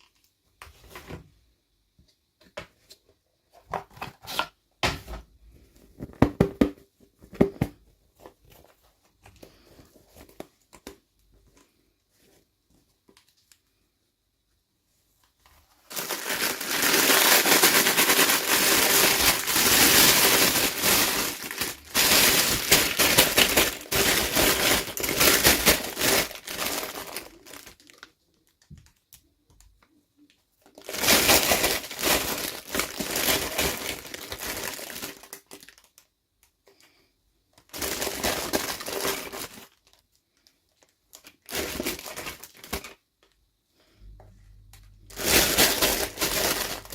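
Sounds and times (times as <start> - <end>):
packaging crinkling and tearing: 15.8 - 29.2, 30.6 - 36.1, 37.6 - 43.4, 45.0 - 46.9.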